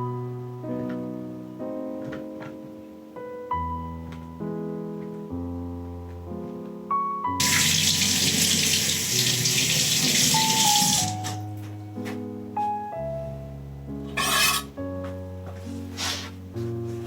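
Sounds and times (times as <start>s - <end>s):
soft piano music: 0.0s - 17.0s
water tap running into sink: 7.4s - 11.4s.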